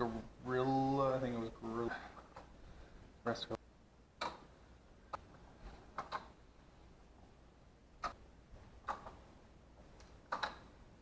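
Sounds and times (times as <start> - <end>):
faint clicks and taps: 8.0 - 10.7.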